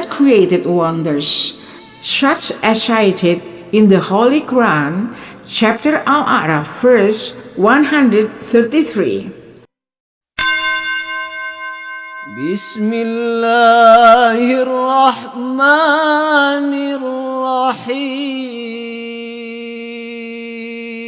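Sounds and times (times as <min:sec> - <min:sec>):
ringing chime tone: 0:10.4 - 0:14.0
man chanting recitation: 0:12.4 - 0:21.0.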